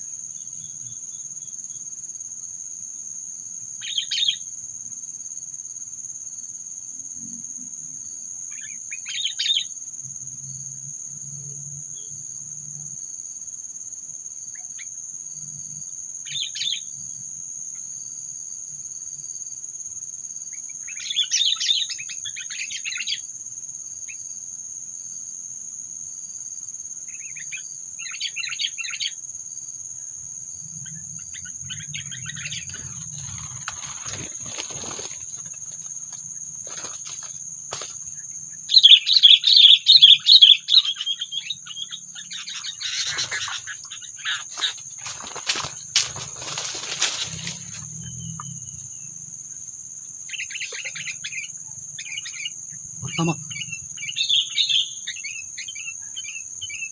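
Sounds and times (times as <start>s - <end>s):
high-pitched insect drone: 0.0s - 56.9s
birds chattering calls: 31.2s - 35.8s, 38.7s - 48.5s, 50.3s - 56.9s.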